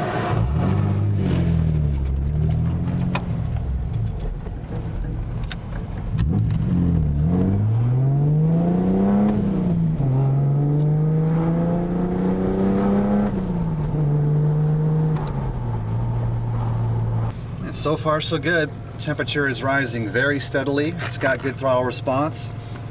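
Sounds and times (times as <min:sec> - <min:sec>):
car engine accelerating: 0:00.0 - 0:17.9.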